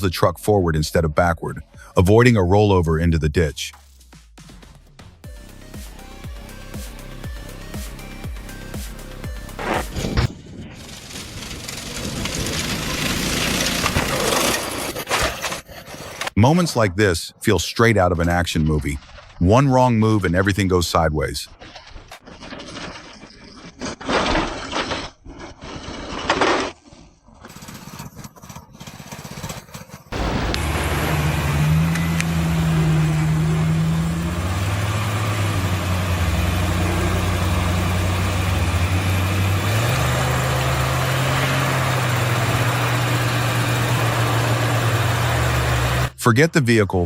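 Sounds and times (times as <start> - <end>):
bus engine revving under load: 10.8 - 14.8, 29.6 - 46.2
loud noisy bursts: 30.1 - 46.1.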